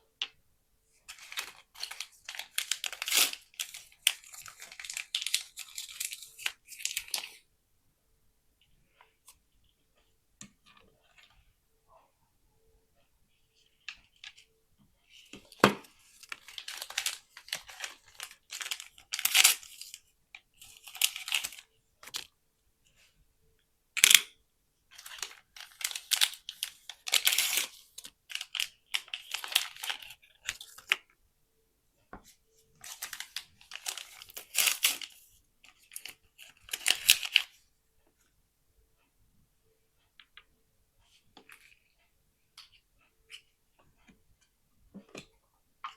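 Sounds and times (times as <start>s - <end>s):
plastic wrapping tearing and crinkling: 1.1s - 7.2s.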